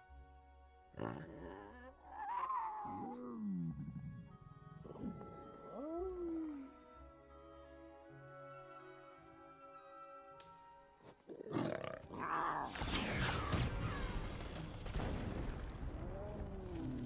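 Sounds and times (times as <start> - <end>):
growls and pitch-sliding cries: 0.9 - 7.0, 11.3 - 13.4, 16.0 - 17.0.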